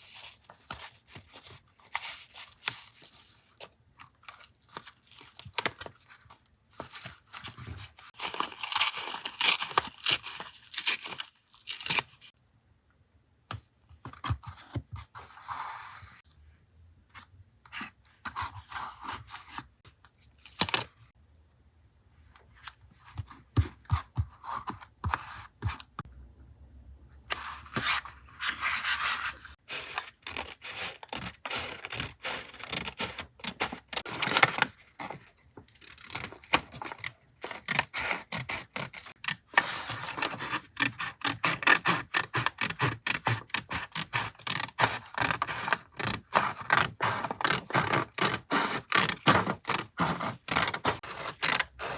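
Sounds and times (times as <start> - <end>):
paper scraping and rubbing: 27.3 - 34.5.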